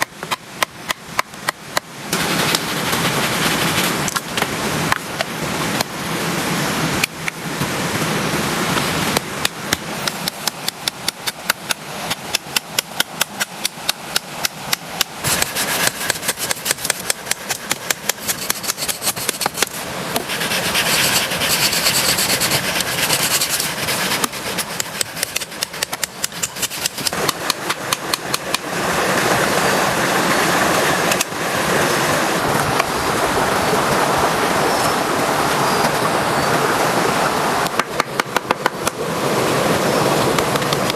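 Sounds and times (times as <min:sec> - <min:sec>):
heavy rain hissing: 0:02.0 - 0:10.3, 0:18.3 - 0:25.6, 0:26.6 - 0:37.7.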